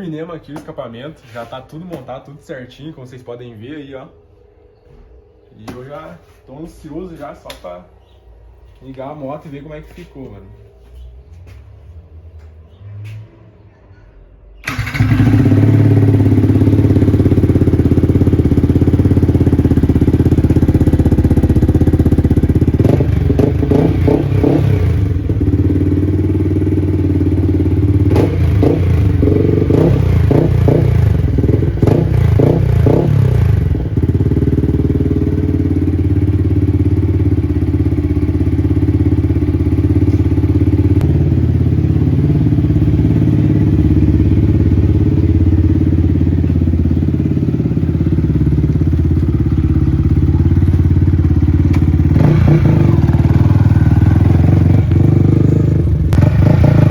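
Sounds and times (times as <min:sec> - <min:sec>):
motorcycle engine idling: 0:14.6 - 0:56.9.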